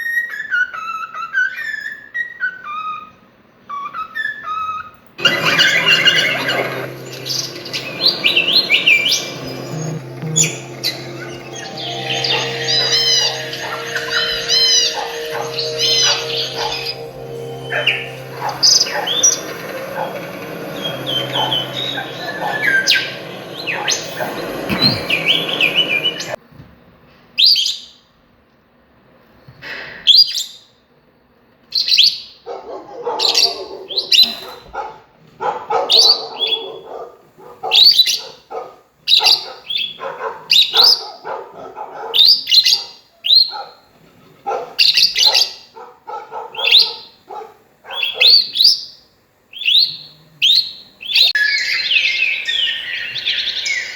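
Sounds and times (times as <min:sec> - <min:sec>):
birds chirping: 0:05.2 - 0:26.4, 0:49.6 - 0:53.9.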